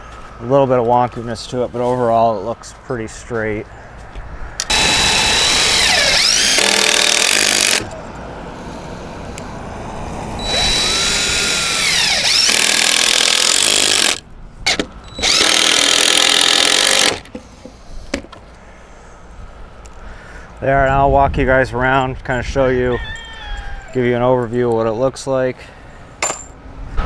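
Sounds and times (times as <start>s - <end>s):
power drill running: 4.7s - 7.9s, 10.4s - 14.2s, 15.1s - 17.2s.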